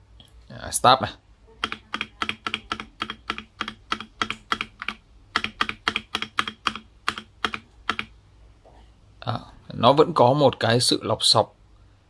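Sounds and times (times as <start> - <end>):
keyboard key presses: 1.6 - 8.1.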